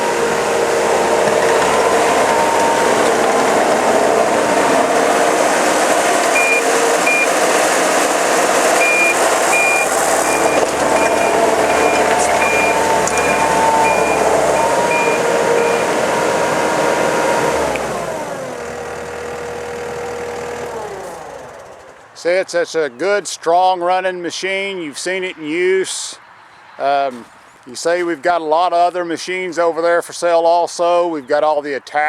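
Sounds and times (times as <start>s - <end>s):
diesel engine running: 0.0s - 22.2s
backup alarm beeping: 6.4s - 7.4s, 8.8s - 16.5s.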